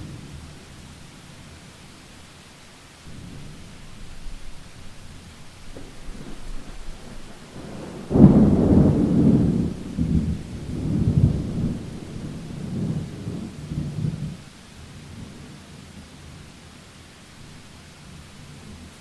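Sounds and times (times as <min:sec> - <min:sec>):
steady rain: 0:00.0 - 0:19.0
thunder rumbling: 0:03.1 - 0:14.4.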